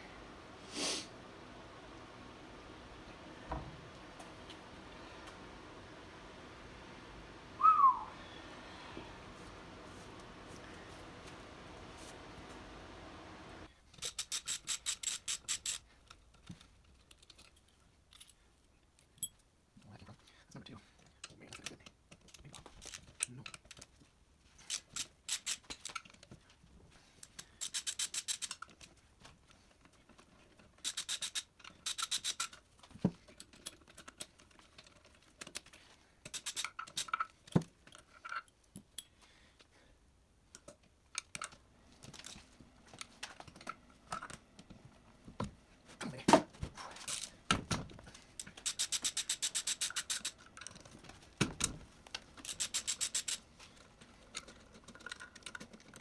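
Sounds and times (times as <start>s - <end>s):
ratchet wrench clicking: 14.0s - 15.8s, 27.6s - 28.6s, 30.9s - 32.6s, 36.3s - 37.1s, 48.4s - 50.4s, 52.4s - 53.4s
metal parts knocking and clinking: 46.9s - 53.4s.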